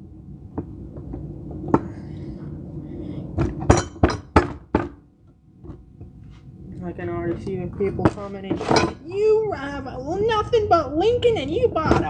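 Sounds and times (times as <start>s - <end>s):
metal on metal clinking: 7.3s - 9.2s.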